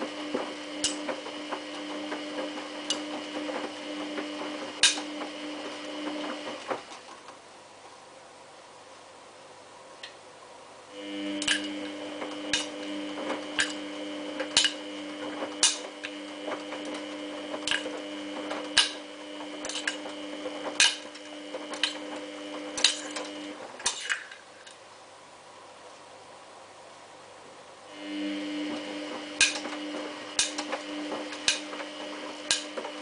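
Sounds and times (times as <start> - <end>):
washing machine motor whine: 0.0 - 7.1, 10.9 - 23.8, 27.9 - 33.0.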